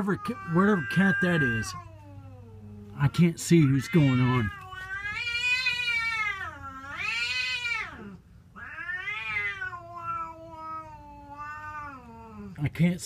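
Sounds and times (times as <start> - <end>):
cats yowling: 0.0 - 12.6.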